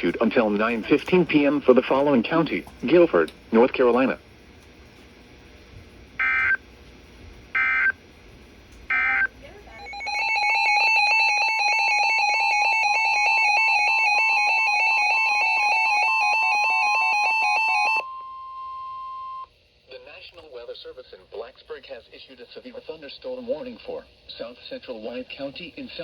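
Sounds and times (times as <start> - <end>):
loud steady alert tone: 6.2 - 6.6, 7.6 - 8.0, 8.9 - 19.4
screeching data bursts: 6.2 - 6.6, 7.6 - 8.0, 8.9 - 19.4.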